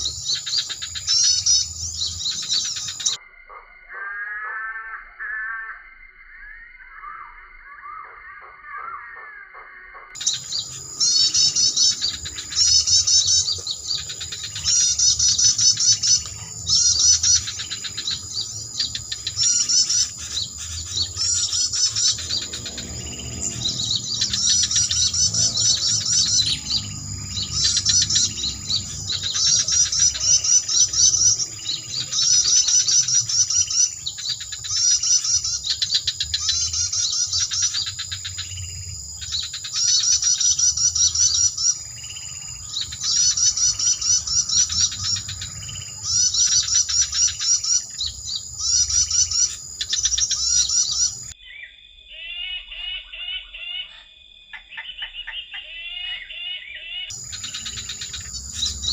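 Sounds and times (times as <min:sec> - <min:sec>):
small birds chirping songs: 0:00.0 - 0:58.9
steady high whine: 0:57.2 - 0:58.9.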